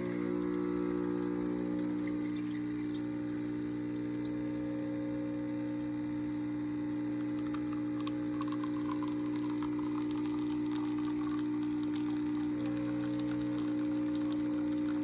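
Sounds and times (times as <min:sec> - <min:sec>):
coffee machine pump humming: 0:00.0 - 0:15.0
coffee spurting into cup: 0:07.2 - 0:15.0.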